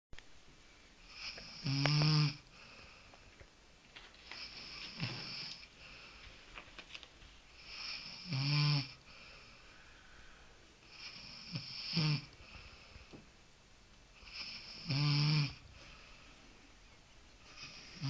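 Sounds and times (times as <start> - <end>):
loud buzzing snore: 1.1 - 2.4, 7.6 - 9.0, 10.9 - 12.3, 14.2 - 15.6
breathy breathing hiss: 2.5 - 3.4, 9.0 - 13.3, 14.2 - 16.8.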